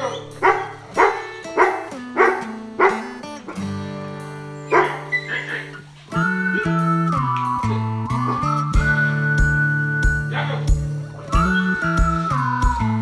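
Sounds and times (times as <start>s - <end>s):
background music with plucked guitar: 0.0s - 13.0s
short bark-like hits: 4.5s - 5.8s.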